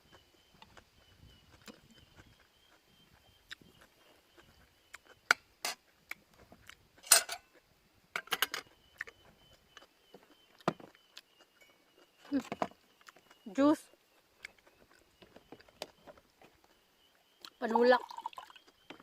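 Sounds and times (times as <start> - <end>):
cutlery clinking on a plate: 7.0 - 7.5, 8.2 - 8.7.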